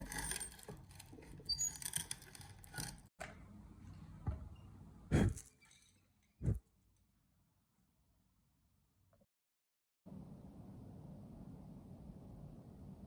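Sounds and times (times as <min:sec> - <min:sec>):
high squeaks: 0:01.4 - 0:02.4.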